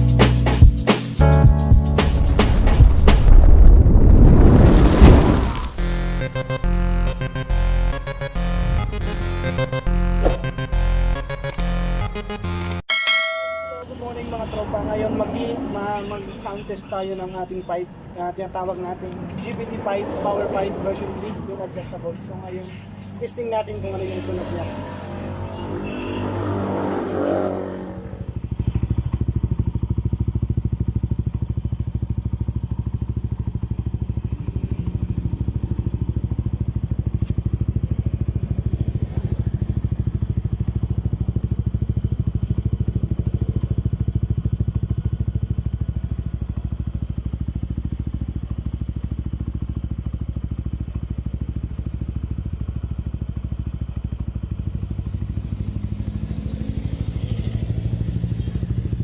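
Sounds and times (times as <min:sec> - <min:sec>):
motorcycle engine idling: 0:27.6 - 0:59.0.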